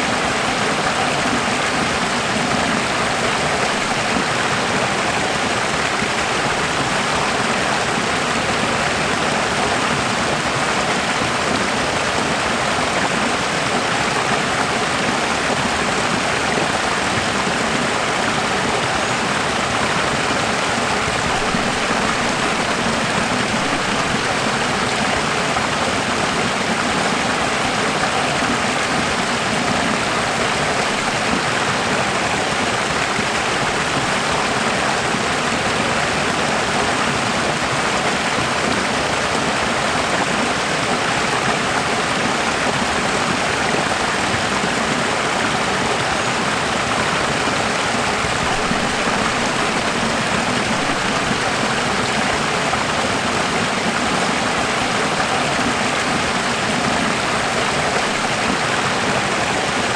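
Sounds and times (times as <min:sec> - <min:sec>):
running water rushing: 0:00.0 - 0:59.9.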